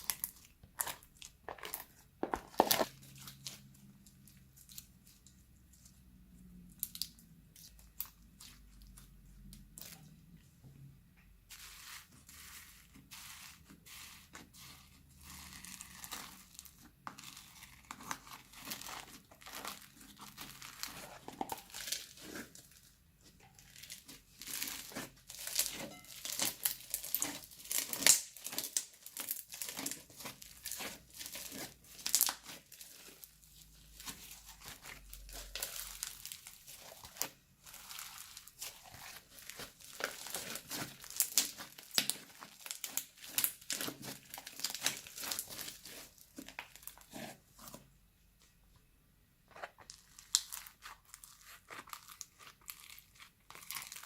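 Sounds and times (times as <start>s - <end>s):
slime crackling and popping: 0.0s - 3.6s, 6.6s - 10.0s, 23.6s - 47.8s, 49.8s - 54.0s.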